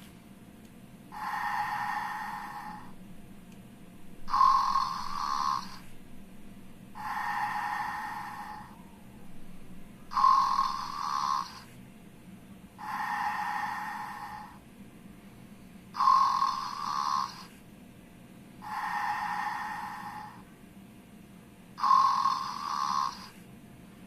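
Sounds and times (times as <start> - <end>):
person snoring: 1.1 - 2.9, 4.3 - 5.9, 7.0 - 8.8, 10.1 - 11.8, 12.8 - 14.6, 15.9 - 17.6, 18.6 - 20.5, 21.8 - 23.5.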